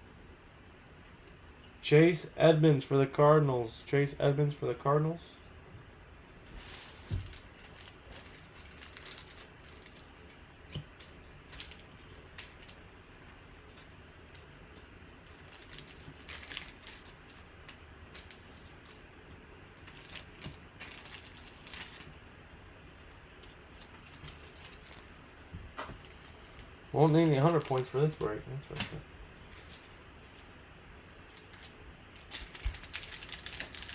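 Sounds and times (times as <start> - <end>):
cards clicking and crinkling: 7.0 - 19.0, 25.8 - 30.0, 31.2 - 33.9.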